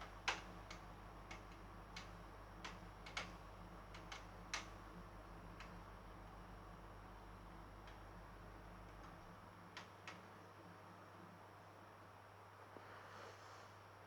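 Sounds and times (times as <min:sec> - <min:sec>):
faint small clicks: 0:00.0 - 0:04.8, 0:08.8 - 0:10.3
low electrical hum: 0:00.0 - 0:14.0.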